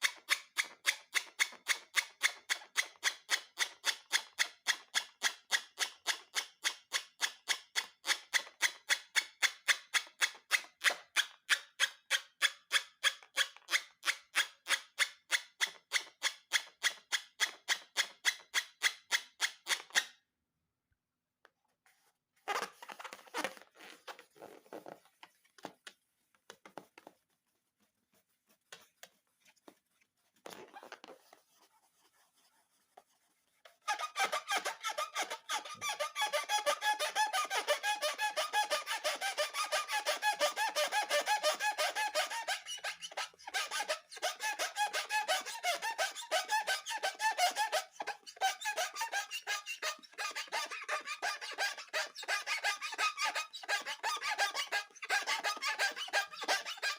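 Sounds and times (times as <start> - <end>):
rubber balloons squeaking: 22.4 - 25.7, 30.4 - 31.3, 33.7 - 56.9.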